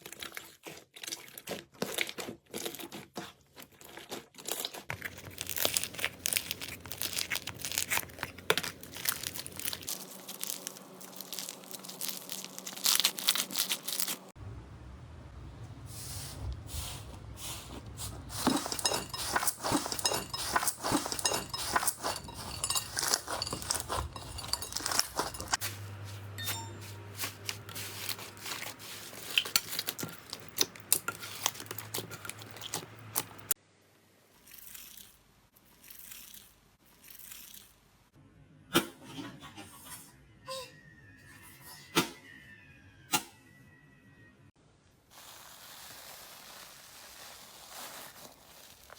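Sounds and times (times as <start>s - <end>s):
slime crackling and popping: 5.1s - 14.3s, 45.1s - 48.9s.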